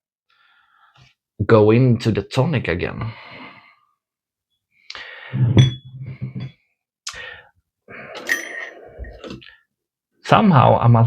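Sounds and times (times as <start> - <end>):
glass bottle clinking: 5.6 - 6.6, 8.1 - 9.4.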